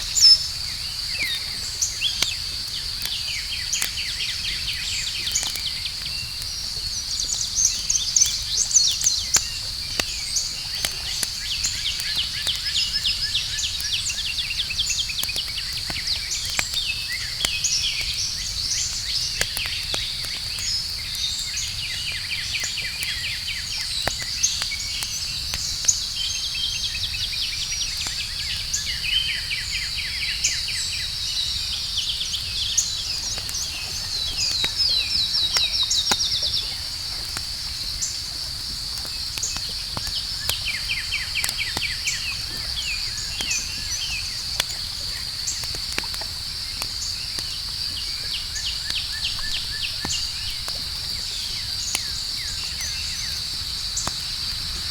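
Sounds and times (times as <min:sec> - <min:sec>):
campfire crackling and popping: 0:00.0 - 0:54.9
night insects chorus: 0:00.0 - 0:54.9
pulsing insect trills: 0:31.3 - 0:54.8.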